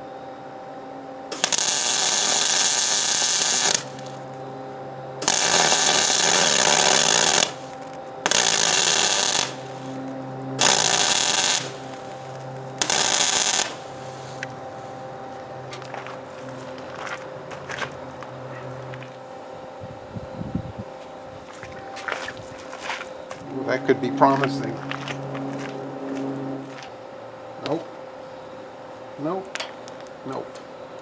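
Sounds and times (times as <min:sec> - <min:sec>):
steady low hum: 0:00.0 - 0:31.0
welder hissing: 0:01.3 - 0:04.4, 0:05.2 - 0:15.4.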